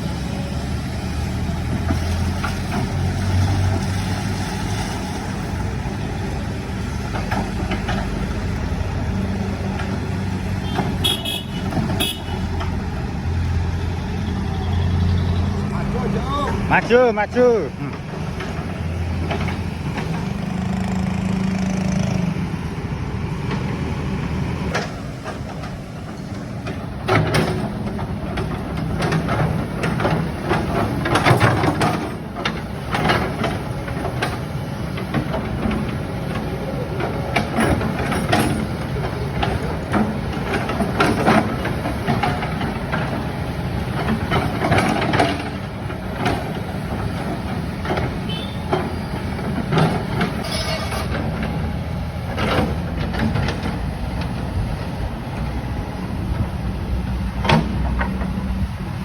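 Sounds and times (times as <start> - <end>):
excavator diesel engine running: 0.0 - 59.0
knocks and clatter: 24.7 - 55.5, 57.4 - 58.7.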